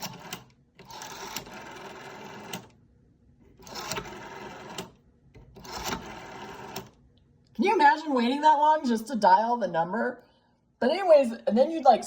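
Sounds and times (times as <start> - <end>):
rotary telephone dial whirring: 0.0 - 2.8, 3.6 - 7.0.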